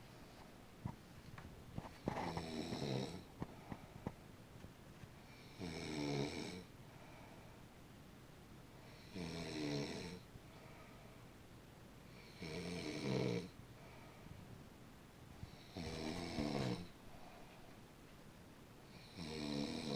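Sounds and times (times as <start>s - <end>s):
person snoring: 2.0s - 3.3s, 5.4s - 6.7s, 8.9s - 10.2s, 12.2s - 13.5s, 15.5s - 16.9s, 18.9s - 19.9s.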